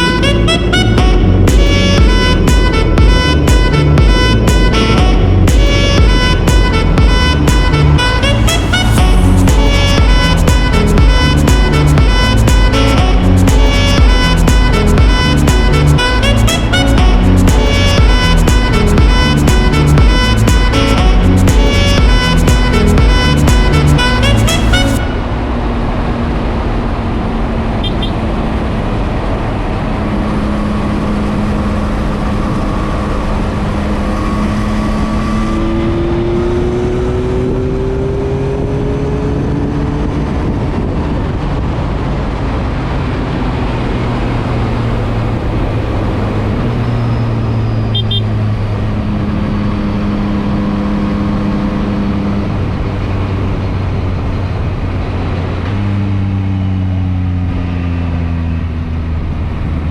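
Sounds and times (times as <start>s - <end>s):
motorcycle engine running: 0.0s - 25.2s
heavy wind rush: 0.0s - 57.2s.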